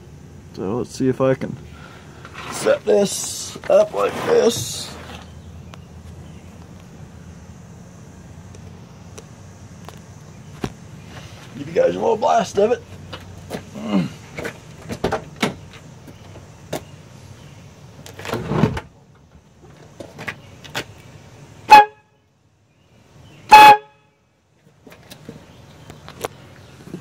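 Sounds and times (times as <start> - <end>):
air horn blasts: 21.7 - 22.1, 23.5 - 24.1.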